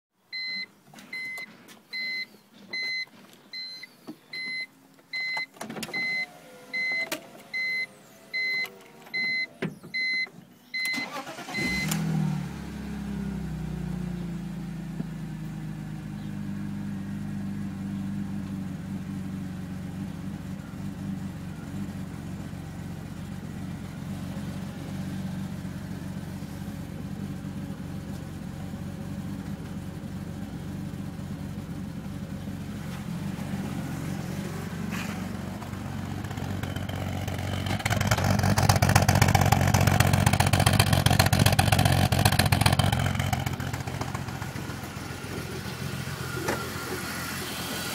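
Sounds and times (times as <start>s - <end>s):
dashboard warning chime beeping: 0.3s - 12.0s
car engine cranking and idling roughly: 6.2s - 47.9s.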